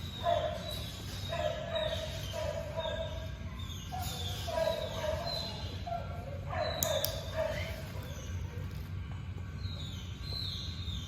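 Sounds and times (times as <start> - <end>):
dogs barking: 0.0 - 8.8.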